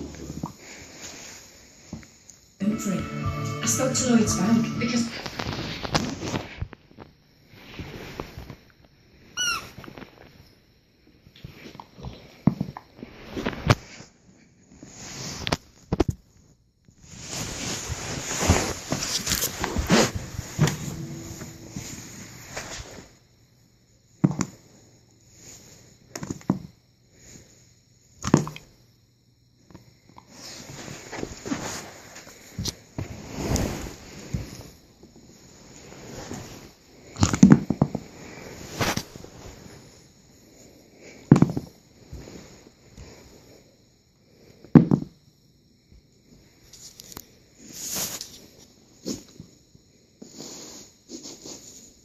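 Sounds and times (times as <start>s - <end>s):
breathy hiss: 0.0s - 6.6s, 17.0s - 23.2s.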